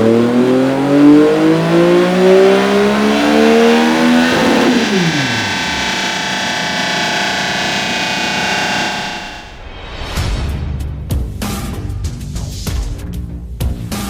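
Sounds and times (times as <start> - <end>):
motorcycle engine revving: 0.0 - 9.6
music with distorted guitar: 2.6 - 9.6.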